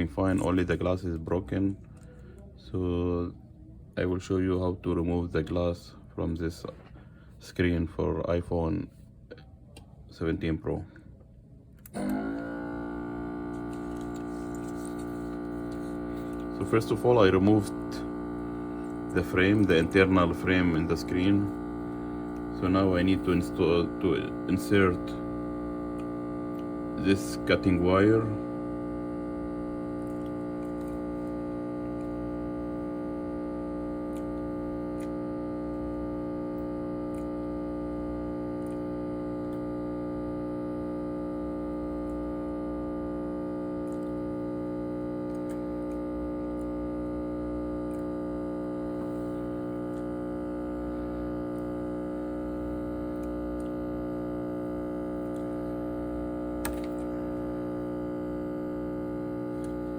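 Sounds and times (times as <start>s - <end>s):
sustained synth chord: 12.0s - 59.9s.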